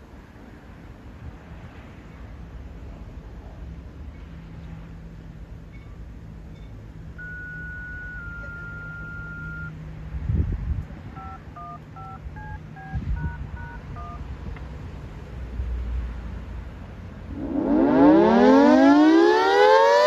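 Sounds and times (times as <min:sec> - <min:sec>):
touch-tone beeps: 0:06.6 - 0:09.8, 0:11.2 - 0:14.2
two-tone pager alert: 0:07.2 - 0:09.8, 0:11.2 - 0:14.2
low hum: 0:16.4 - 0:19.1.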